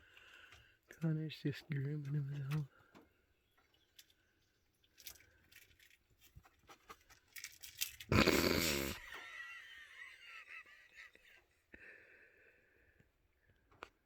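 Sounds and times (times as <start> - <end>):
loud rough rasp: 8.1 - 9.1.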